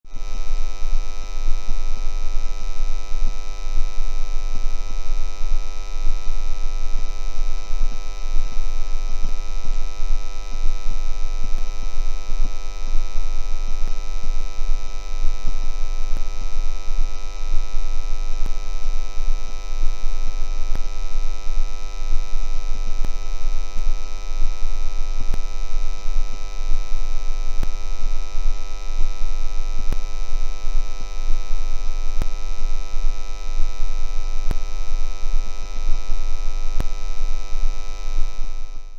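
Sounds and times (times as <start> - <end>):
transformer buzzing hum: 0.1 - 38.9.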